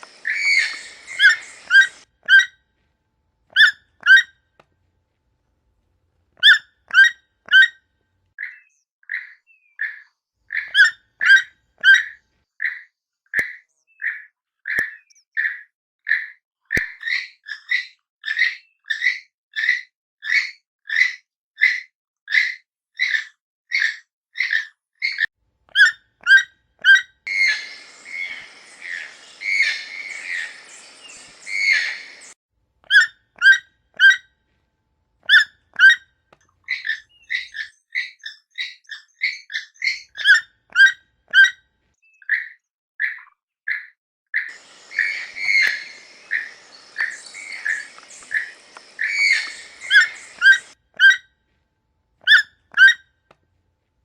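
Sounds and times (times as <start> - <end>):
background animal calling: 0.0 - 2.5, 25.8 - 34.2, 44.4 - 51.2
toucan calling: 0.0 - 2.5, 25.8 - 34.2, 44.5 - 51.2.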